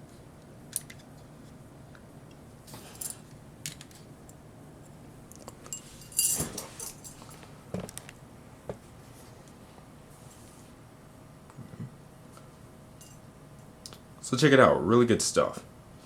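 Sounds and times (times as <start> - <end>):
jingling rattle of parts: 5.7 - 7.2.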